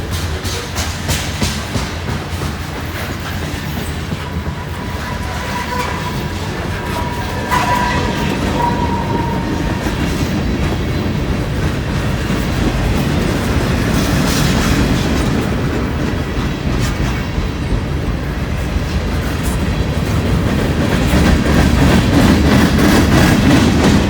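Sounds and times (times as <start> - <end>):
freight train rumbling: 0.0 - 24.0
high wheel squeal: 3.7 - 11.0.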